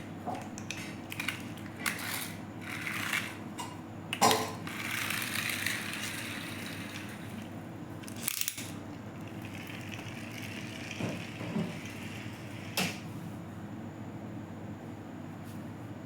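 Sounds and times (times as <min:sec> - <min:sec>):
steady low hum: 0:00.0 - 0:16.0
plastic toys clicking and knocking: 0:08.0 - 0:12.2.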